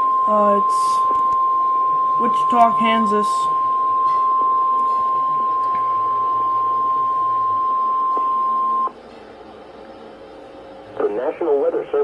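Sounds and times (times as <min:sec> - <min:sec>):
steady alarm beep: 0:00.0 - 0:08.9.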